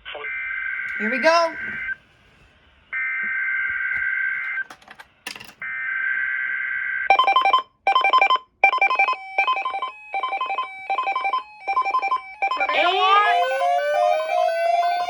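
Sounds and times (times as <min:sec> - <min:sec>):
pulsing two-tone alert signal: 0:07.1 - 0:15.0.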